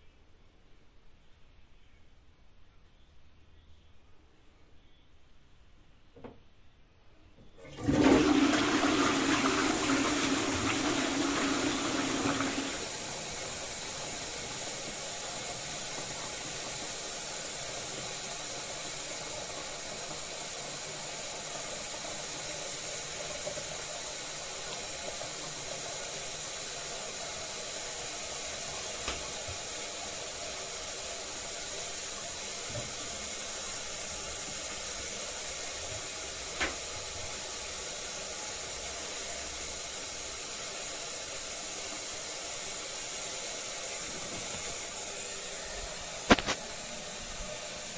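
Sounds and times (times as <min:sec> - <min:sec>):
toilet flush click: 0:07.6 - 0:27.0, 0:28.0 - 0:30.2, 0:31.9 - 0:37.5
cistern refilling hiss: 0:07.6 - 0:47.9
toilet flushing: 0:07.6 - 0:47.9.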